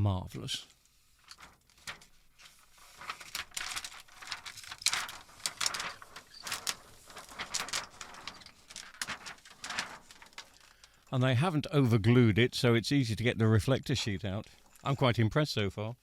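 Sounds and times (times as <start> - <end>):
plastic sheets rustling: 1.0 - 11.0.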